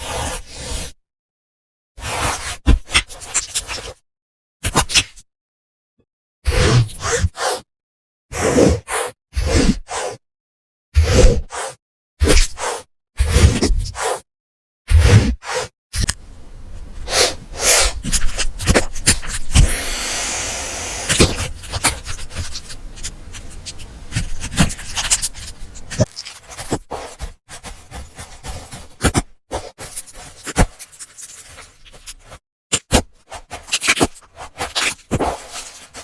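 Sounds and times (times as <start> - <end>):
rasping scrape: 11.0 - 14.2, 14.9 - 16.2, 17.0 - 32.4.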